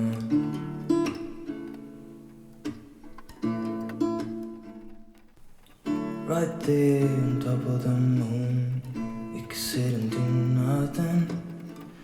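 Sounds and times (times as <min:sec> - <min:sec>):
acoustic guitar chords: 0:00.0 - 0:12.0
person singing: 0:06.2 - 0:12.0.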